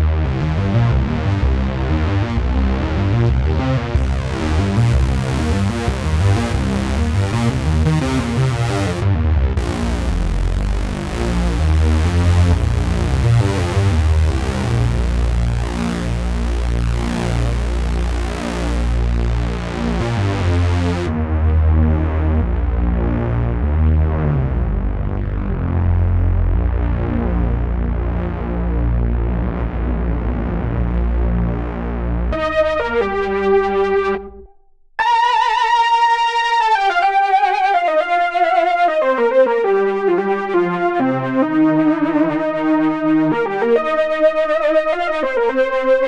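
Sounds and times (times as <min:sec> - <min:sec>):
synthesizer pad chords: 0:00.0 - 0:34.2
deep bass: 0:00.0 - 0:34.6.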